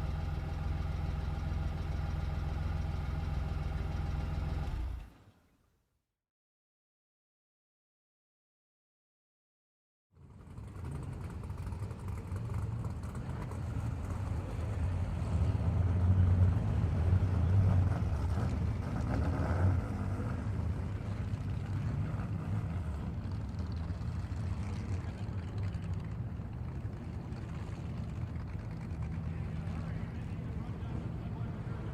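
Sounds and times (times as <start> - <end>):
car engine running: 10.2 - 31.9.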